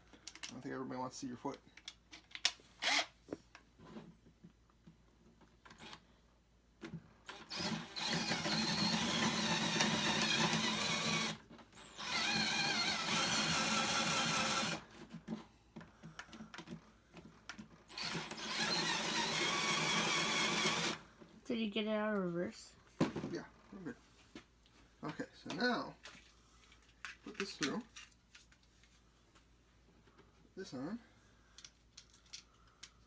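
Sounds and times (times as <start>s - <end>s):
power drill boring into wood: 2.8s - 3.1s, 7.2s - 14.9s, 17.9s - 21.0s.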